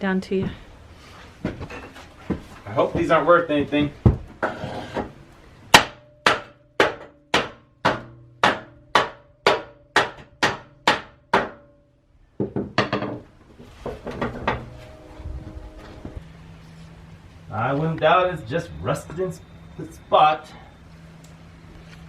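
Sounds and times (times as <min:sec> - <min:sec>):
hammer striking metal: 0:05.7 - 0:11.8.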